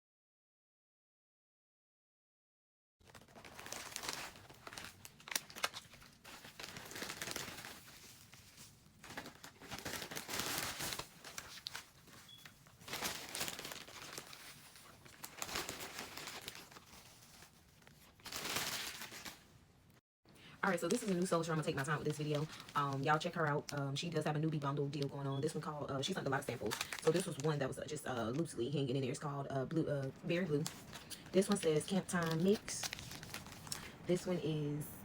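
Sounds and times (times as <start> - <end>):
packaging crinkling and tearing: 3.0 - 19.6, 20.6 - 23.8, 26.1 - 27.6, 30.1 - 34.1.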